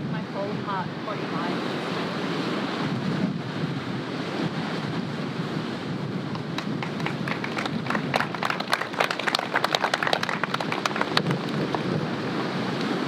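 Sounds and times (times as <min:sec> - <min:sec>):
surf washing on beach: 0:00.0 - 0:13.0
wind buffeting microphone: 0:00.0 - 0:13.0
people clapping: 0:06.3 - 0:12.0.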